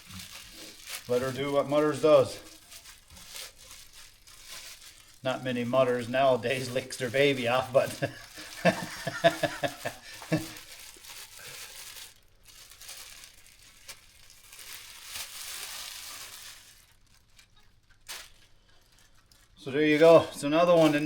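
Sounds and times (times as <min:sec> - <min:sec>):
sheep licking lamb wet rustling: 0:00.0 - 0:11.6.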